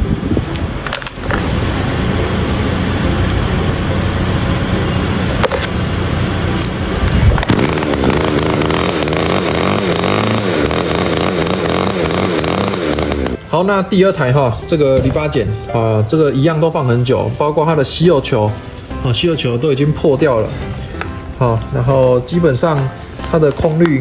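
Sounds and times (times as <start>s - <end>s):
chainsaw engine revving: 0.9s - 4.1s, 4.9s - 13.6s.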